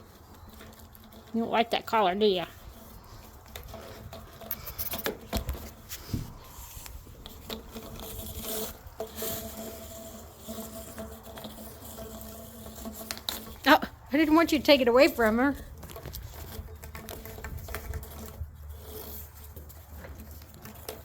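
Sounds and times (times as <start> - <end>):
puppies scuffling at play: 15.8 - 21.0.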